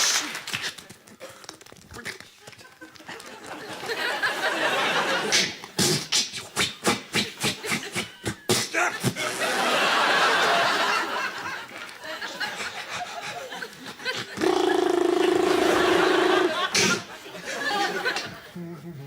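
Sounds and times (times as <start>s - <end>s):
audience laughter: 2.7s - 5.7s, 9.0s - 18.9s
mouth percussive sound effects: 5.3s - 9.2s, 14.2s - 17.1s.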